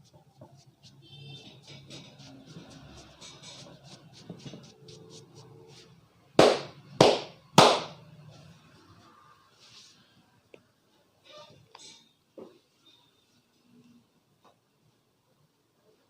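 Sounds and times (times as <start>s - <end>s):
quick rubbing strokes: 0.0s - 6.0s
loud hand slaps: 6.4s - 8.0s.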